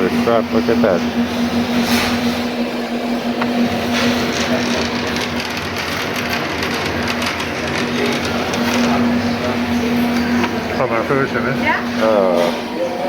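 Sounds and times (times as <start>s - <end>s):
steady electrical hum: 0.0s - 13.0s
indistinct background voices: 3.1s - 13.0s.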